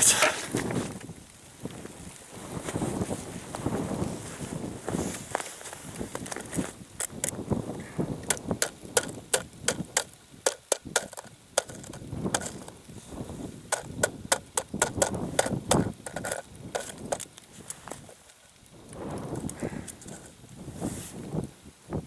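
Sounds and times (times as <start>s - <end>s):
footsteps crunching through snow: 1.9s - 6.8s.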